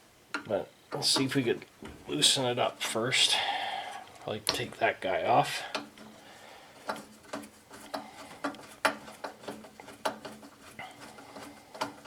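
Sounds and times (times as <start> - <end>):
hand tool clicking on metal: 5.7 - 6.2.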